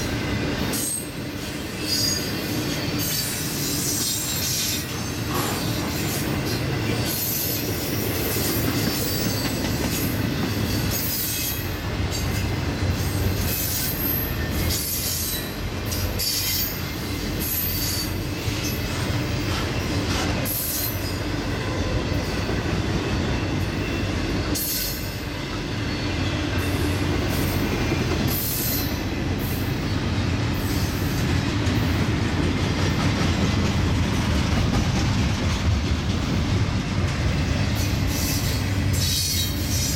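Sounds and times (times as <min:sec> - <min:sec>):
freight train rumbling: 0:00.0 - 0:39.9
wheel squeals on rails: 0:00.7 - 0:19.7, 0:37.8 - 0:39.9.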